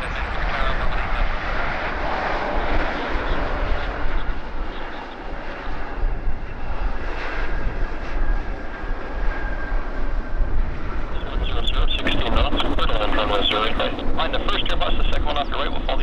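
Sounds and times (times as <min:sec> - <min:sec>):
wind rumble on microphone: 0:00.0 - 0:16.0
jet engines rushing: 0:07.4 - 0:16.0
faint steady whine: 0:10.8 - 0:16.0.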